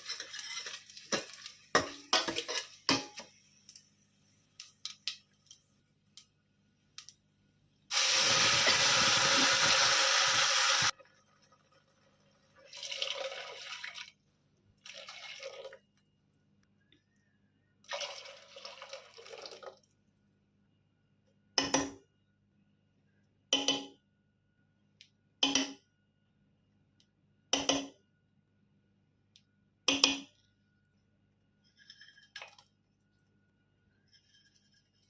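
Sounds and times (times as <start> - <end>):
liquid being poured: 7.9 - 14.2, 14.8 - 15.9, 17.9 - 19.8.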